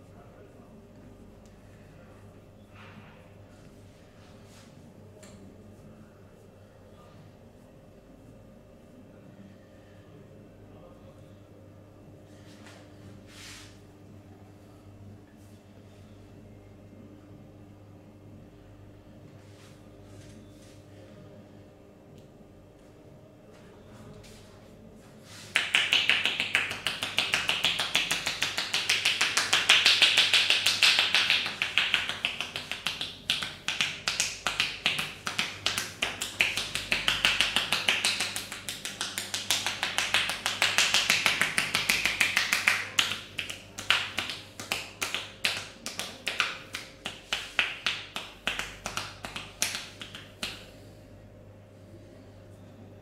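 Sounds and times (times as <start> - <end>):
hands tapping and slapping body: 25.5 - 50.7.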